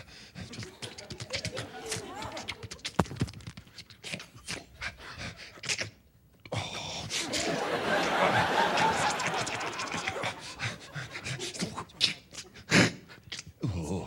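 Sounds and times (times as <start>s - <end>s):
audience laughing: 0.4s - 3.0s, 7.2s - 11.9s.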